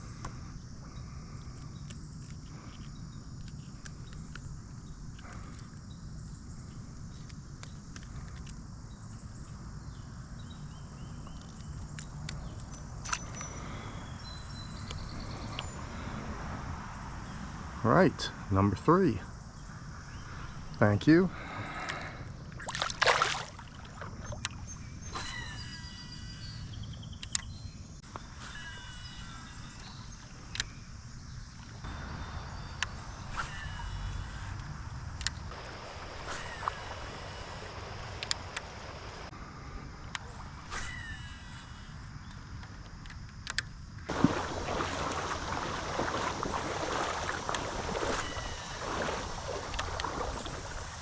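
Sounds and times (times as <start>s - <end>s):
birds calling: 19.4s - 39.3s, 44.1s - 51.0s
water splashing in a creek: 21.4s - 25.6s, 31.8s - 39.3s, 44.1s - 51.0s
sharp clicks: 42.2s - 43.8s.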